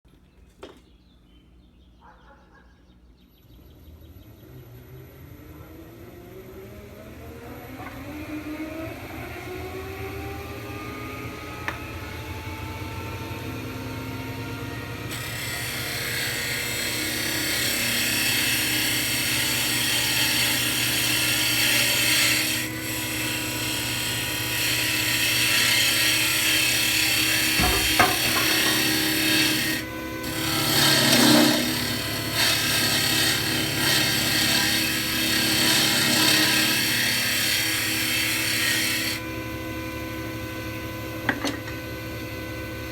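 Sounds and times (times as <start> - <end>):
lathe motor whining: 4.1 - 42.9.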